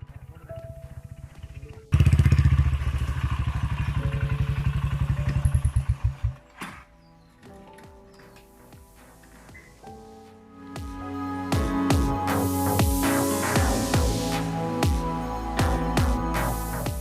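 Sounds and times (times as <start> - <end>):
motorcycle engine running: 0.0 - 6.5.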